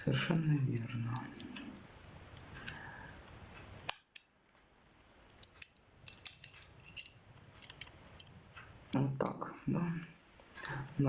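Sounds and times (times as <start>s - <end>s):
metal multitool parts clicking: 5.3s - 8.3s.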